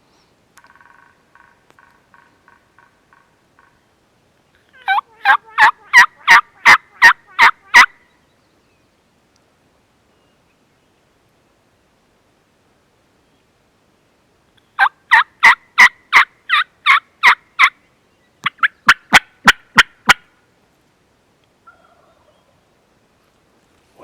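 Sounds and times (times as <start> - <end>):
turkey call yelps: 4.7 - 8.0, 14.8 - 17.8, 21.6 - 22.6.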